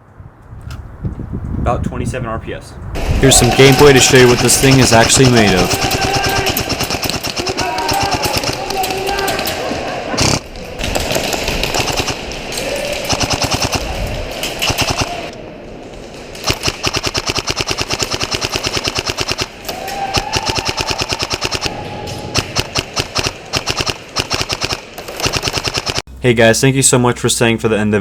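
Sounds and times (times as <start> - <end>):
airsoft gun full-auto bursts: 3.2 - 9.5, 10.2 - 12.2, 13.1 - 13.8, 16.4 - 21.7, 22.4 - 26.0.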